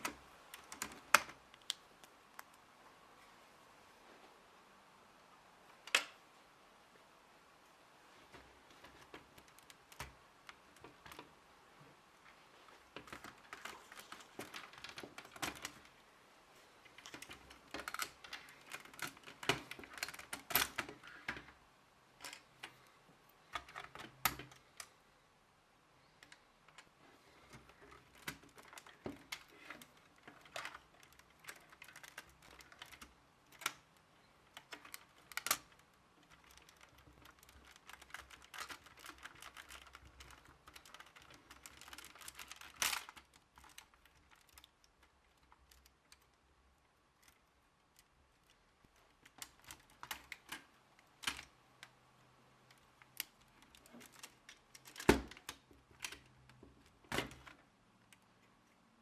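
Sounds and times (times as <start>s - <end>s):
plastic bricks clicking and rattling: 27.5s - 46.3s.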